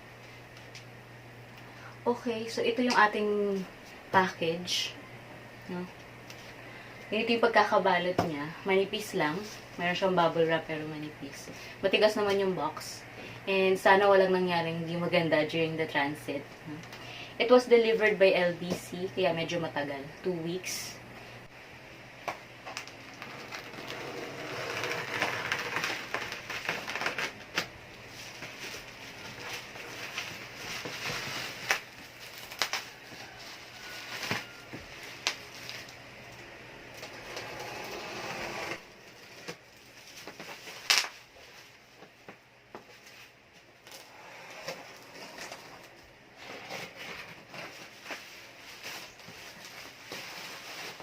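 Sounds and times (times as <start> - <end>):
plastic rustling and crinkling: 22.3 - 37.6, 38.8 - 51.0.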